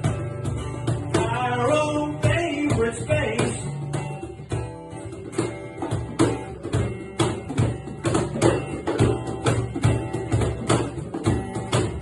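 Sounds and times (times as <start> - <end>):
percussion beat: 0.0 - 12.0
strummed guitar: 0.0 - 12.0.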